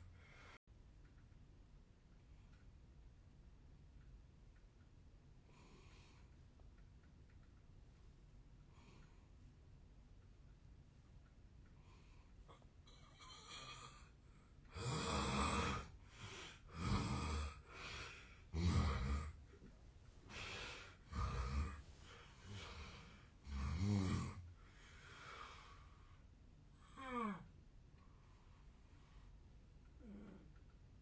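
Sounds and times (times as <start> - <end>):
man snoring: 14.7 - 16.0, 16.7 - 17.8, 18.5 - 19.4, 20.4 - 24.4.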